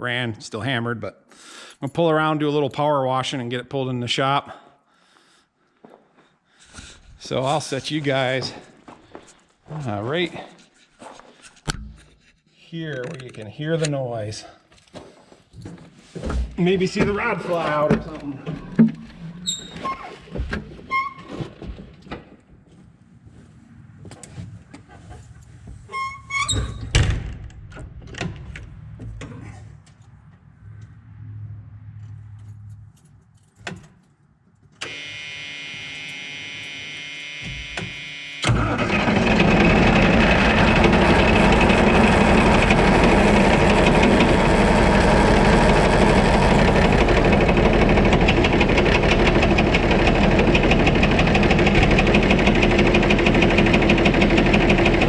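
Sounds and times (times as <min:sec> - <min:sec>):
clicks and clunks: 0:13.0 - 0:14.0
starter motor cranking: 0:34.8 - 0:55.0
diesel engine running with knock: 0:38.5 - 0:55.0.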